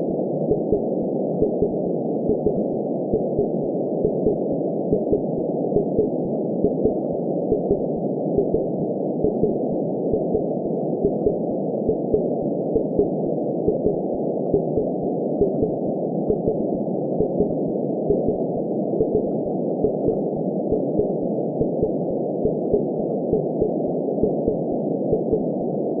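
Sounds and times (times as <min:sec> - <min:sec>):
heartbeat thumps: 0:03.2 - 0:07.8, 0:13.7 - 0:15.7, 0:16.3 - 0:16.6, 0:17.2 - 0:18.4, 0:19.0 - 0:25.4.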